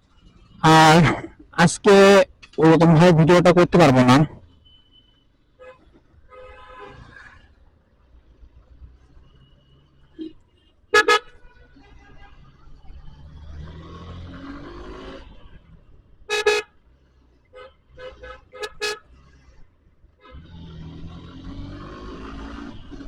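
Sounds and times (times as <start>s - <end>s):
low traffic rumble: 0.0s - 4.6s
vehicle horns honking: 3.0s - 7.1s, 10.1s - 12.6s, 16.3s - 16.8s, 17.5s - 19.2s, 20.2s - 20.6s
engine rising in pitch: 20.3s - 23.0s.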